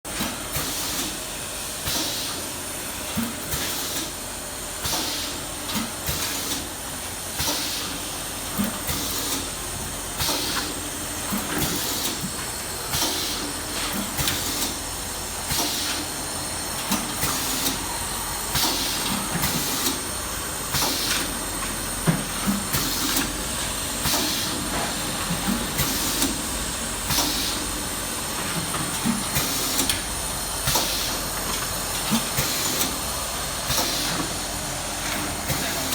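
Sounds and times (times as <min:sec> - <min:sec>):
shrink-wrapping machine hissing: 0:16.8 - 0:35.9.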